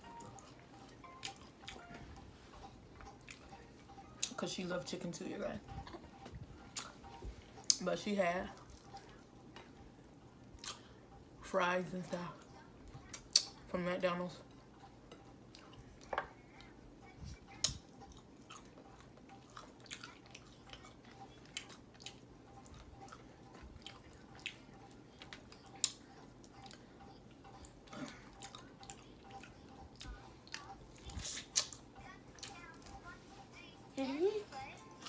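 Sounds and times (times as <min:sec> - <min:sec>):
chewing crunchy food: 0:00.0 - 0:04.4, 0:08.5 - 0:09.8, 0:10.4 - 0:11.1, 0:14.4 - 0:33.7.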